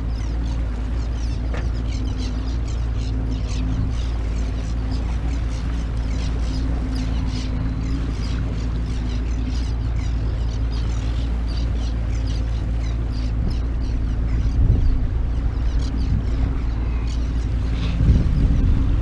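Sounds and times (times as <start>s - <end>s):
boat engine humming: 0.0s - 19.0s.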